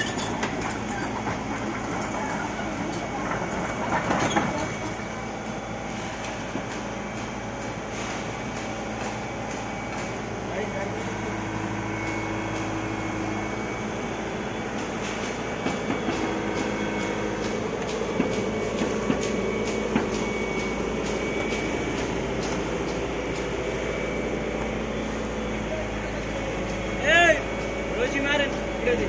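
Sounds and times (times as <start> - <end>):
metallic clanks: 0.0 - 3.4
excavator engine and hydraulic drone: 0.0 - 29.0.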